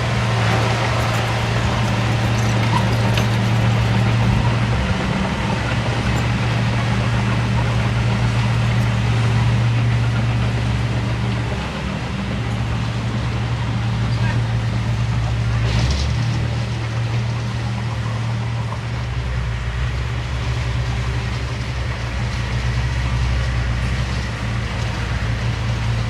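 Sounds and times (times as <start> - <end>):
diesel engine droning: 0.0 - 26.0.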